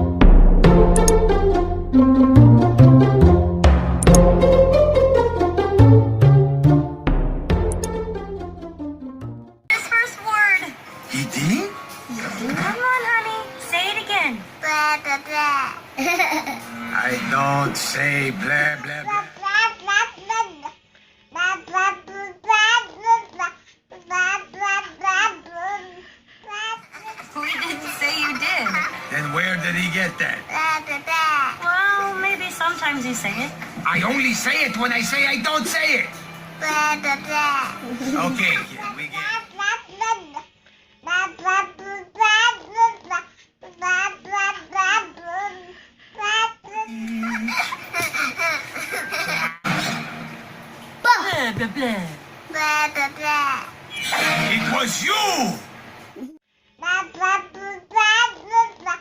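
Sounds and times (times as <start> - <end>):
baby babbling: 18.8 - 26.8, 38.8 - 46.9, 56.2 - 59.0.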